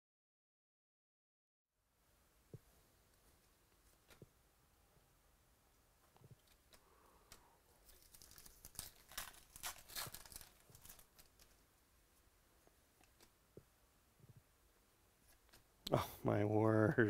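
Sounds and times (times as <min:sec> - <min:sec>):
wrapper tearing and crinkling: 0:07.8 - 0:11.6.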